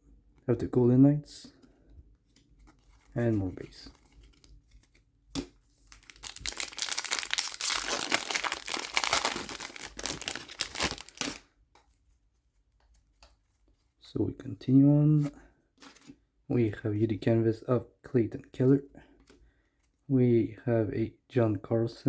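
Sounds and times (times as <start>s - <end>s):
wrapper tearing and crinkling: 5.8s - 11.4s.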